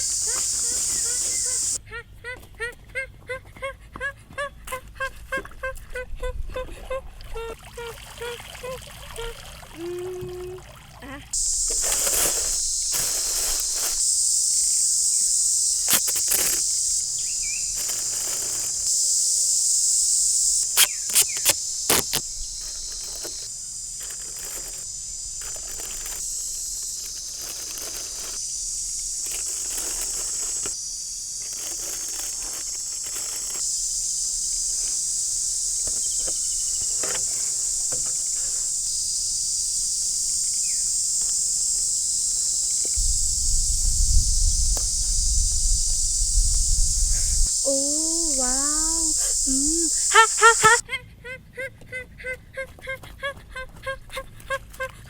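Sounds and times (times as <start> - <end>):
high-pitched insect chorus: 0.0 - 1.8, 11.4 - 50.8
rustling and handling noise: 11.4 - 14.9, 15.6 - 19.0, 20.6 - 30.8, 31.4 - 33.8.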